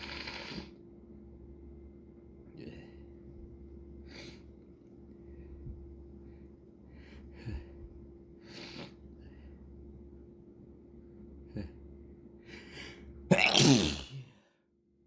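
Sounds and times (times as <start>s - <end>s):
person sniffling: 13.3s - 14.2s.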